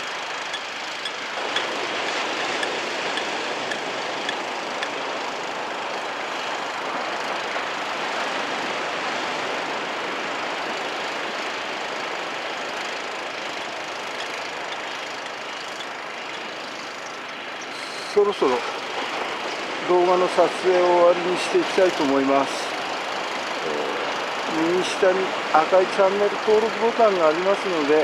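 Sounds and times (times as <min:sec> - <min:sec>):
faint ticks: 0:00.0 - 0:05.4, 0:12.7 - 0:18.1.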